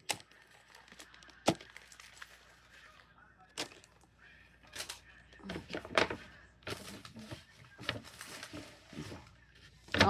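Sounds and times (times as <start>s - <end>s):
plastic bags crinkling: 0.3s - 2.9s.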